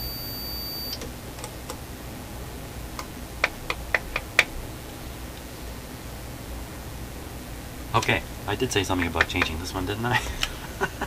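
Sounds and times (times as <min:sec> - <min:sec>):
high electronic beep: 0:00.0 - 0:01.0.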